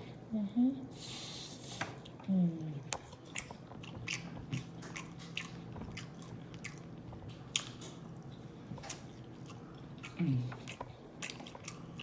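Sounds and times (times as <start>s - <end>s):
open-mouth chewing: 3.0s - 12.0s.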